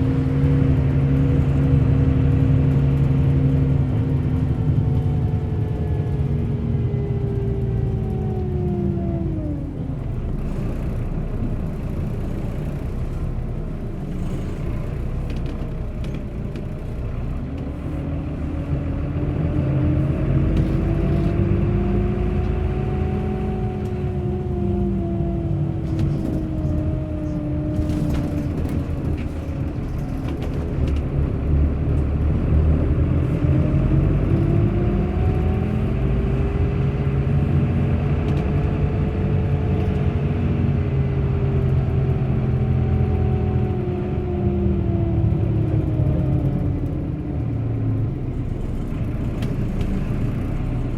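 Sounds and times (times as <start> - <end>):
bus engine rumbling: 0.0 - 50.9.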